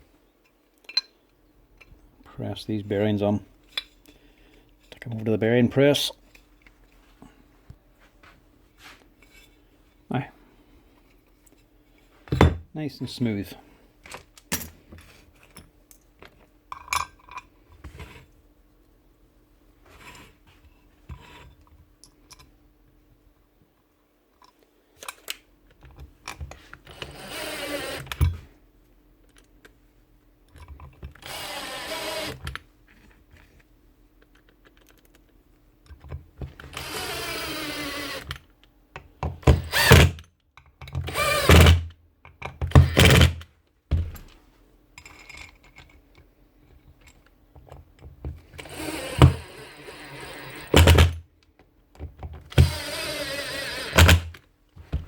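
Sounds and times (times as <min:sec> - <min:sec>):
small power tool motor bursts: 0:27.0 - 0:28.1, 0:31.2 - 0:32.4, 0:36.7 - 0:38.3, 0:39.6 - 0:40.2, 0:41.1 - 0:41.8, 0:48.6 - 0:51.1, 0:52.6 - 0:54.3.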